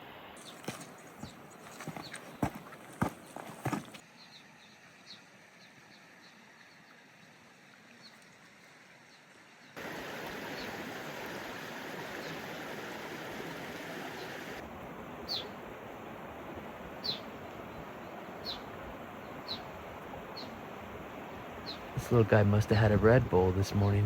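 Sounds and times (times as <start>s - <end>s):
mountain stream rushing: 0.0s - 4.1s, 9.8s - 24.0s.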